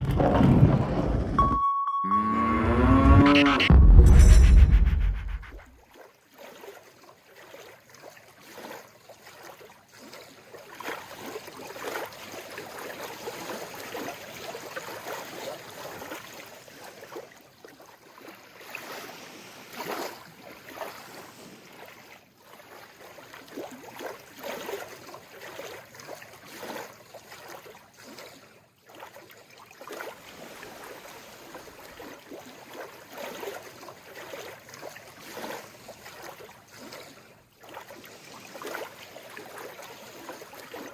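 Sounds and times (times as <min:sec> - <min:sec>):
seawater lapping gently: 0:16.6 - 0:40.9.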